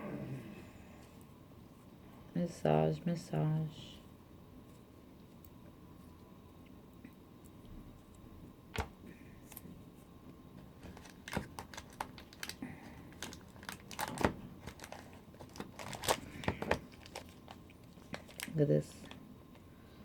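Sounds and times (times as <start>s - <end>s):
packaging crinkling: 10.8s - 19.2s.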